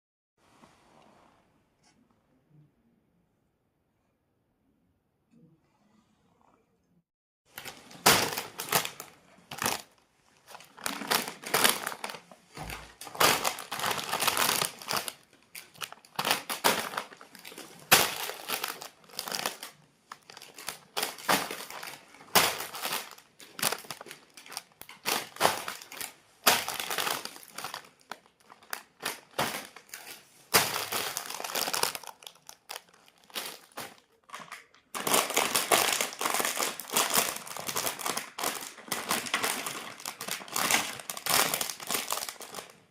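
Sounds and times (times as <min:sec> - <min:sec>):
snack packets crinkling: 0:07.5 - 0:42.9.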